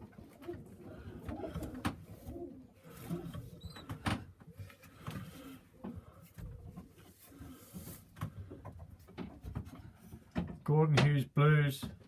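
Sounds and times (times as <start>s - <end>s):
pigeons cooing: 0.0s - 4.7s.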